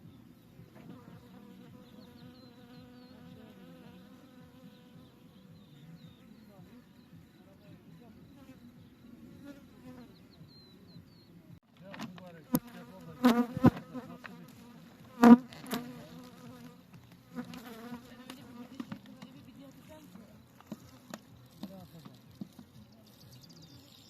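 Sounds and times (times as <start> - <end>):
honeybees buzzing: 0.0 - 10.5, 12.3 - 24.0
bees flying close past: 0.8 - 6.9, 12.5 - 22.4.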